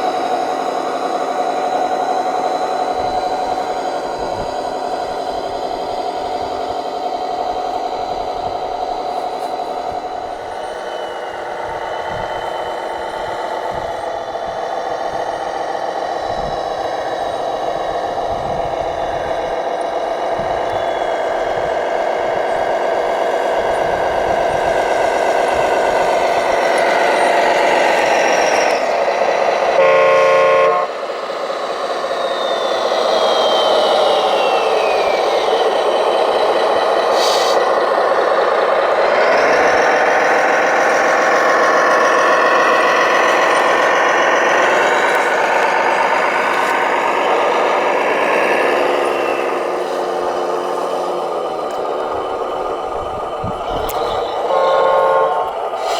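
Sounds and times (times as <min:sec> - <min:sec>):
whine of toy truck motors: 0:00.0 - 0:55.9
short loud horn toot: 0:29.8 - 0:30.9, 0:54.5 - 0:55.5.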